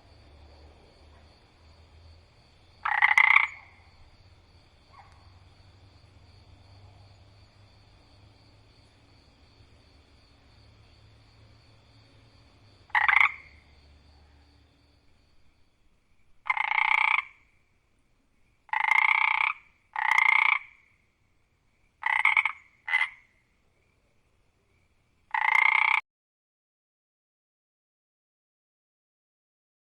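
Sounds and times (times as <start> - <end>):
frog croaking: 0.0 - 15.7, 16.3 - 17.6, 18.6 - 21.0, 22.0 - 23.4, 25.3 - 26.0
faint night background: 0.0 - 26.0.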